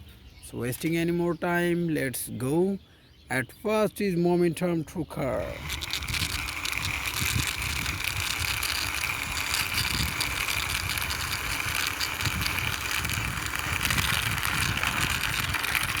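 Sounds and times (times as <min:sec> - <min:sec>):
toy truck wheels rattling: 0:05.2 - 0:16.0.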